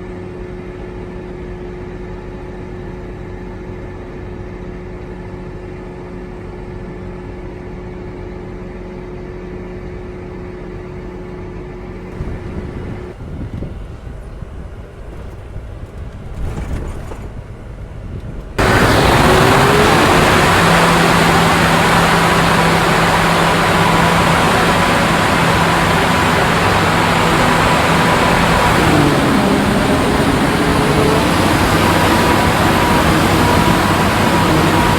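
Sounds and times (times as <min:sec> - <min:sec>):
farm machinery engines running: 0:14.2 - 0:34.9
loud rushing machine noise: 0:18.6 - 0:34.9.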